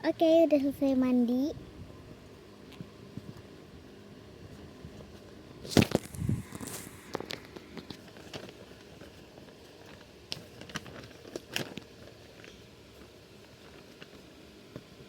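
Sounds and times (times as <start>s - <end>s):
paper clicks and rustles: 5.0s - 15.0s.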